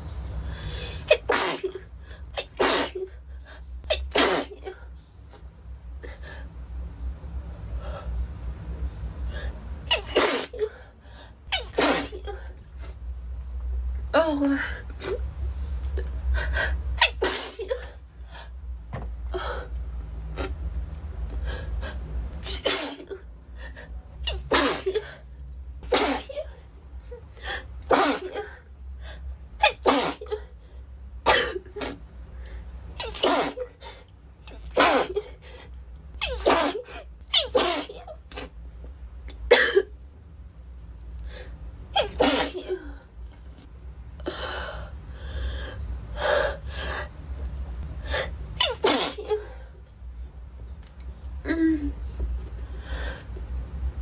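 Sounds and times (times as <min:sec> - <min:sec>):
girl sneezing: 0:01.1 - 0:01.8, 0:02.4 - 0:03.0, 0:03.9 - 0:04.7, 0:09.9 - 0:10.6, 0:11.6 - 0:12.3, 0:17.0 - 0:17.8, 0:22.4 - 0:23.1, 0:24.3 - 0:25.1, 0:25.9 - 0:26.4, 0:27.9 - 0:28.5, 0:29.6 - 0:30.4, 0:33.0 - 0:33.7, 0:34.5 - 0:35.3, 0:36.2 - 0:38.5, 0:42.0 - 0:42.9, 0:48.6 - 0:49.4.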